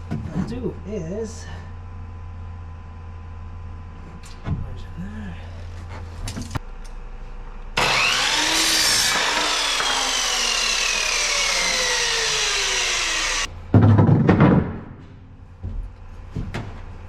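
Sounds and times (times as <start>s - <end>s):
power saw cutting wood: 7.8s - 13.5s.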